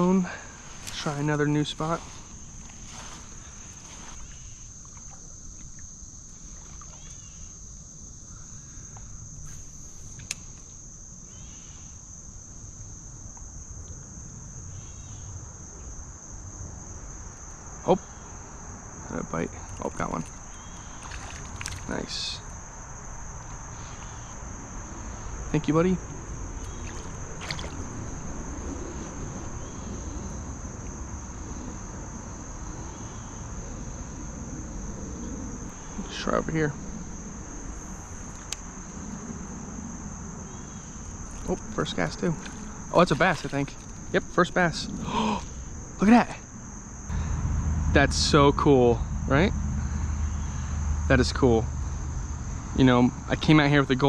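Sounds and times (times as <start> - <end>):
insects droning: 0.0 - 54.0
low rushing noise: 47.1 - 52.7.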